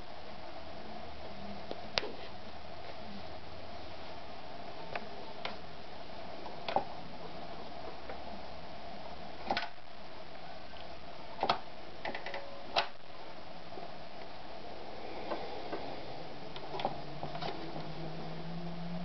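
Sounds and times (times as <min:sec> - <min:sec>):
faint hum: 0:00.0 - 0:19.0
sharp clicks and knocks: 0:06.6 - 0:07.0, 0:09.4 - 0:09.8.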